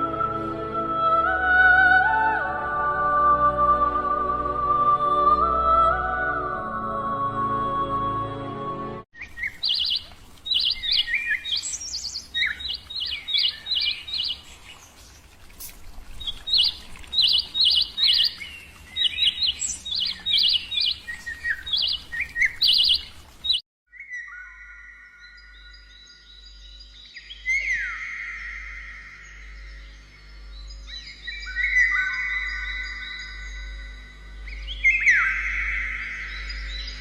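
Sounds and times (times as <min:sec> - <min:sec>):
music: 0:00.0 - 0:09.1
bird chirping: 0:09.2 - 0:37.0.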